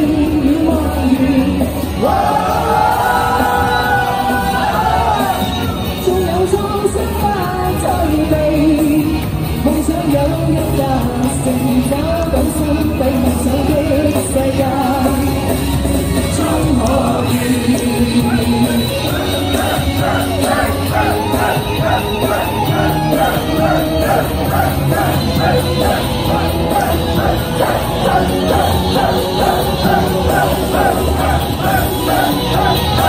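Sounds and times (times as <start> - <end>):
live rock band music: 3.6 - 33.0
person singing: 6.1 - 33.0.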